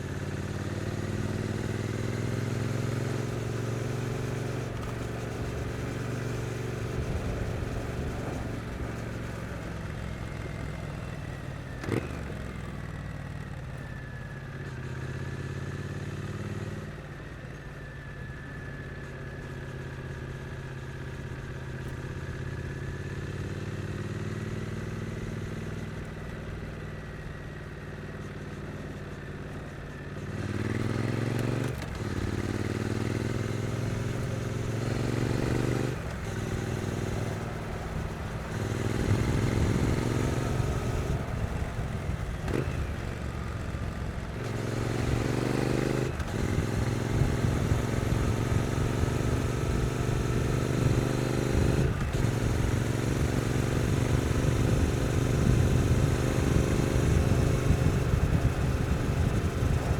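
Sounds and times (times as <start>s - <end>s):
motorcycle engine revving: 0.0s - 14.0s, 27.3s - 59.9s.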